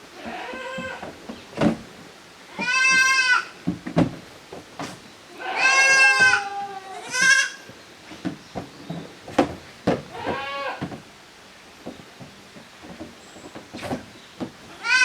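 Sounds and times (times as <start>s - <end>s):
young goats bleating: 0.2s - 1.1s, 2.5s - 3.6s, 5.3s - 7.6s, 10.1s - 10.9s, 14.7s - 15.0s.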